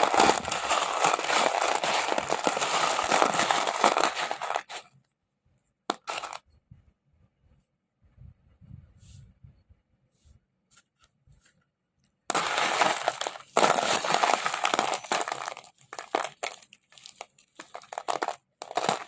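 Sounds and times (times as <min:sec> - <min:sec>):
mothballs crunching and crackling: 0:00.0 - 0:04.9, 0:12.3 - 0:19.0
clinks: 0:13.6 - 0:14.8.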